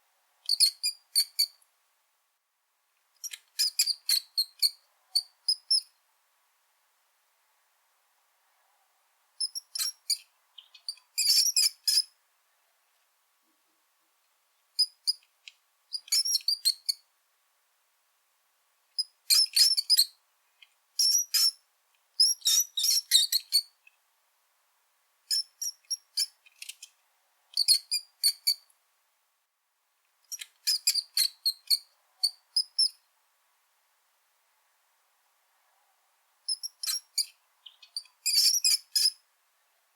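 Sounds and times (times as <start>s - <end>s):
rat squeaking: 3.2s - 5.8s, 9.4s - 12.1s, 15.9s - 17.0s, 19.0s - 20.1s, 21.0s - 21.6s, 22.2s - 23.7s, 27.6s - 28.6s, 30.3s - 33.0s, 36.5s - 39.2s.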